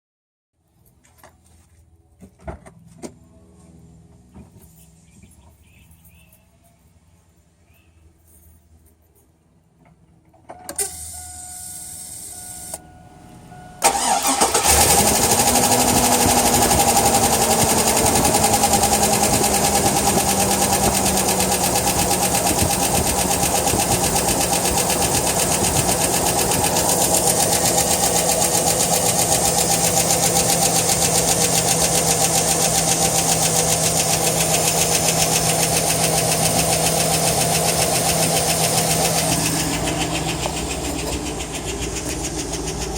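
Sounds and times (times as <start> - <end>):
engine idling: 13.1 - 42.9
starter cranking: 13.8 - 42.9.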